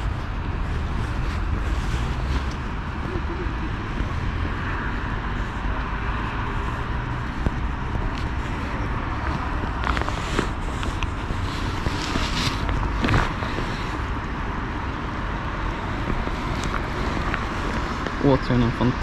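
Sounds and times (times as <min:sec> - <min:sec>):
rustles: 0:00.0 - 0:04.2, 0:06.5 - 0:14.1
traffic rumble: 0:00.0 - 0:19.0
wind: 0:00.0 - 0:19.0.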